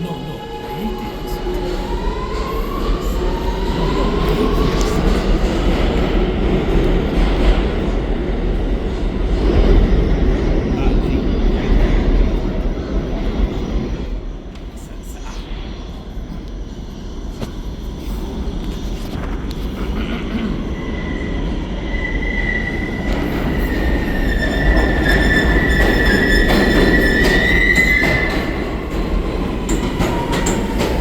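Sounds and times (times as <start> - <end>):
subway train rumble: 0.0 - 31.0
high wheel squeal: 21.0 - 31.0
clacks over rail joints: 23.0 - 31.0.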